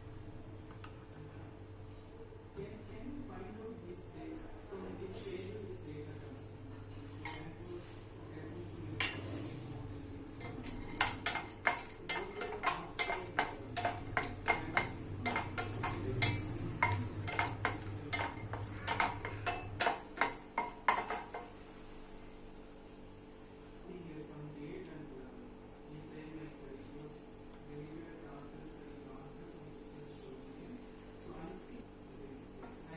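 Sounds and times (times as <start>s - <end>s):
spoon clinking against pot: 10.4s - 21.5s.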